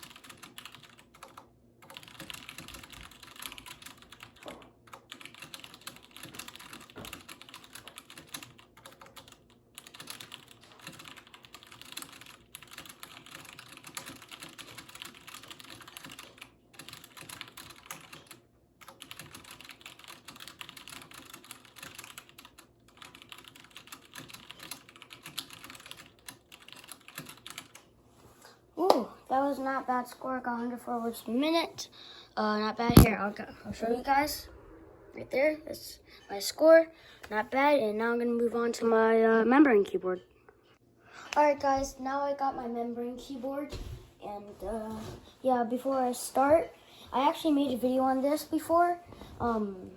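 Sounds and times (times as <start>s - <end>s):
fast typing on mechanical keyboard: 0.0s - 27.9s.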